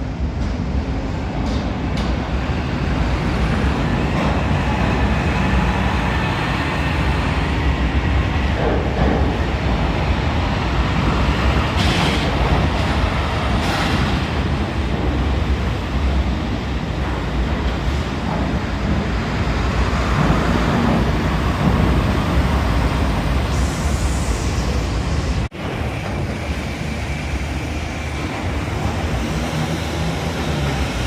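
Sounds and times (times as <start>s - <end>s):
compressed air hissing: 23.4s - 25.2s.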